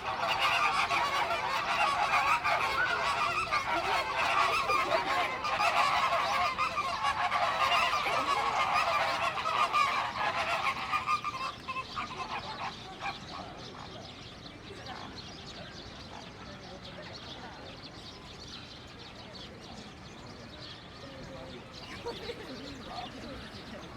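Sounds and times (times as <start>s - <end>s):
flock of birds honking: 0.0s - 13.8s, 21.5s - 23.9s.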